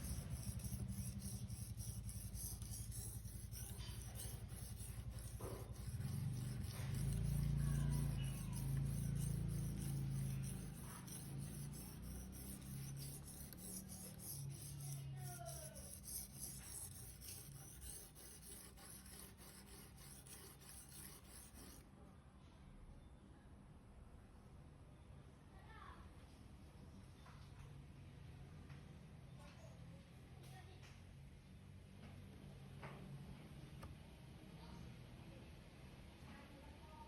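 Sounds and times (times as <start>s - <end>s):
knife blade rasping on sharpener: 0.0s - 21.8s.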